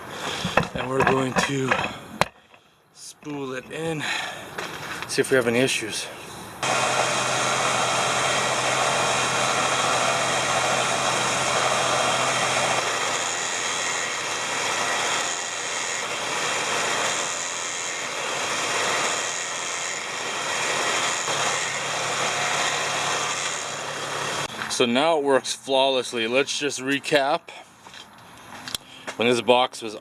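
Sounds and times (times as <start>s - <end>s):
electric winch motor running: 6.6s - 24.7s.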